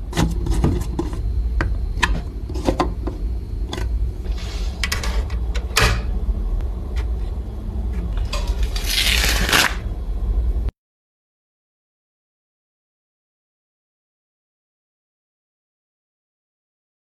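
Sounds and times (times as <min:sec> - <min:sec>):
steady low hum: 0:00.0 - 0:10.7
hissing scrape: 0:04.2 - 0:05.3.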